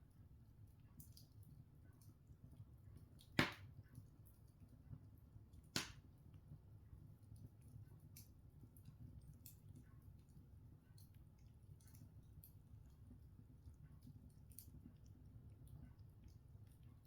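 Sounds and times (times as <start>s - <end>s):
wood fire crackling: 0.0s - 17.0s
burning logs popping: 3.0s - 4.1s, 5.5s - 6.2s.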